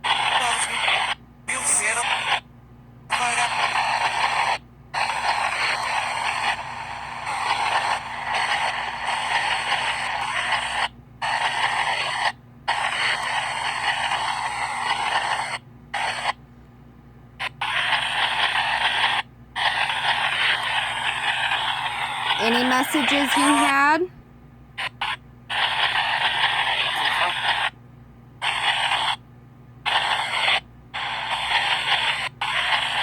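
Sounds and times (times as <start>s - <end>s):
loud hissing radio static: 0.0s - 2.4s, 3.1s - 16.3s, 17.6s - 24.1s, 25.0s - 27.8s, 28.4s - 29.2s, 29.9s - 33.0s
faint low hum: 0.0s - 33.0s.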